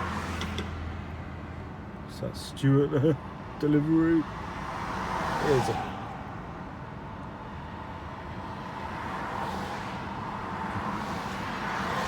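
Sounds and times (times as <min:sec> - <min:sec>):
cars passing on road: 0:00.0 - 0:12.0.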